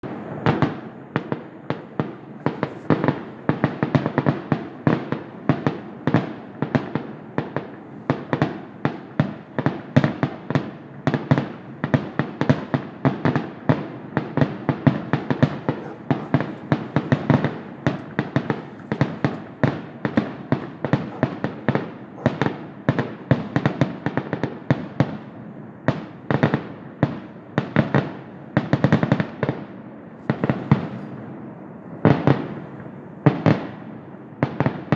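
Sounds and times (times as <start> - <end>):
fireworks bangs: 0.0 - 25.3, 30.2 - 34.9
booming echoes: 15.0 - 22.2.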